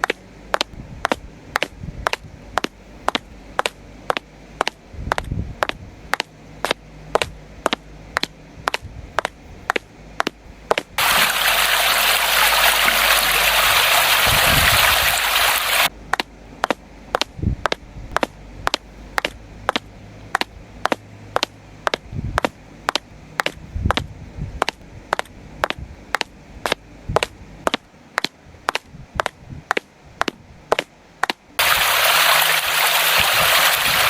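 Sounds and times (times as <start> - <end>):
low steady hum: 0.0 - 34.0
rushing hiss of gushing water: 11.0 - 15.9, 31.6 - 34.0.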